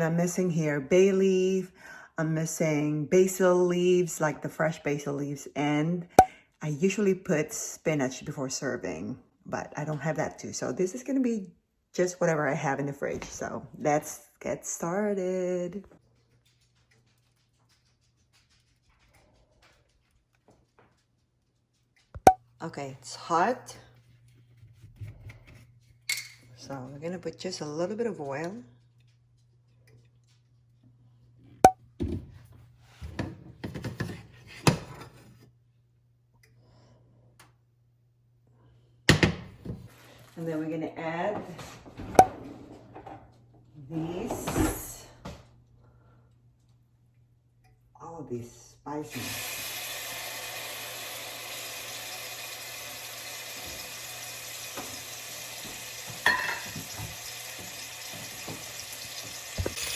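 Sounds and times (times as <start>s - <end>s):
spices sizzling in hot oil: 49.1s - 59.9s.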